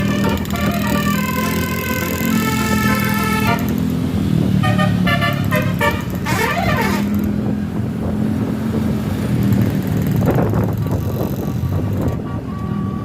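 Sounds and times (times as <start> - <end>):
bus musical air horn: 0.0 - 3.9, 4.6 - 7.4
bus engine drone: 0.0 - 13.0.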